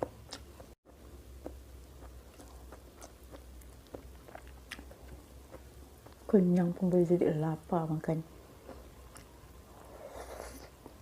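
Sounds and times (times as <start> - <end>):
person chewing food: 0.0 - 6.3, 8.5 - 11.0
low steady hum: 0.0 - 11.0.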